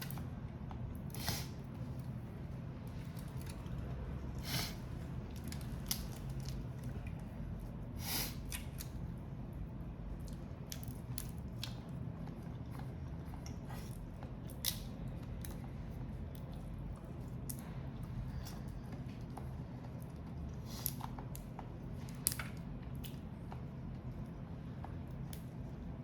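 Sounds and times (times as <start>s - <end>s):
seafood being pulled apart: 5.3s - 7.0s.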